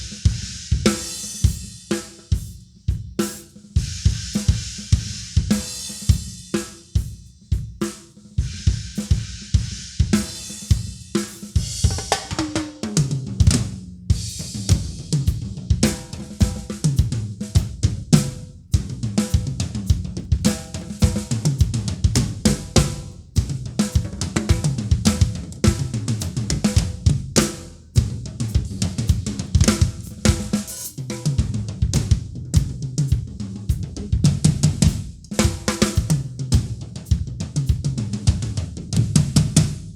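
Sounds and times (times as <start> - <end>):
bass drum: 0.0 - 1.8, 2.4 - 39.9
snare drum: 0.0 - 39.9
hi-hat strikes: 27.4 - 31.1.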